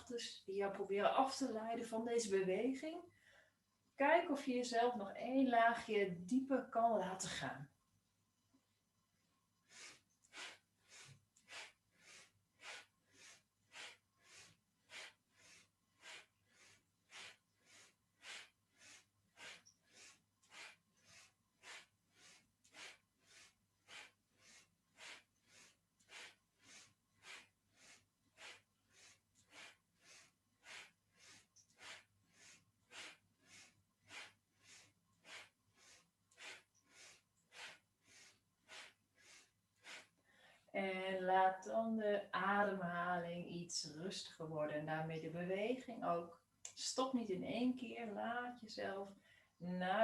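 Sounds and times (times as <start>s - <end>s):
rhythmic forced breathing: 9.6s - 40.7s.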